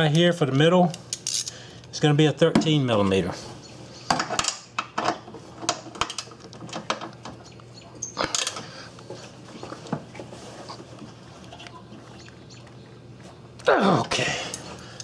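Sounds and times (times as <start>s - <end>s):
ratchet wrench clicking: 1.2s - 1.6s.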